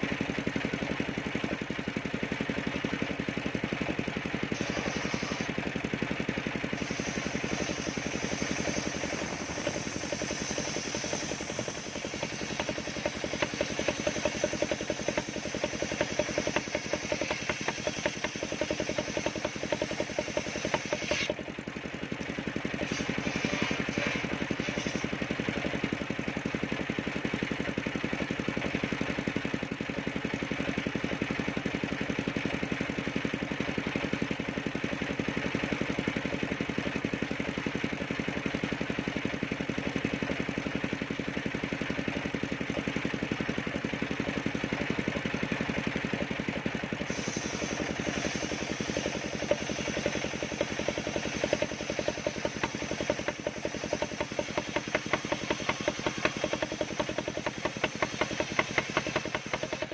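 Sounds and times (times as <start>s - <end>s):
saw blade whining cutting wood: 0.0s - 26.5s, 42.0s - 59.9s
sawmill engine running: 0.0s - 59.9s.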